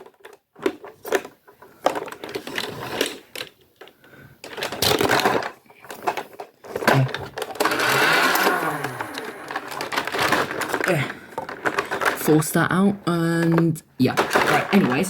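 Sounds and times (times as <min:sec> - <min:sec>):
toy blaster motor whirring and clicking: 0:07.4 - 0:10.8.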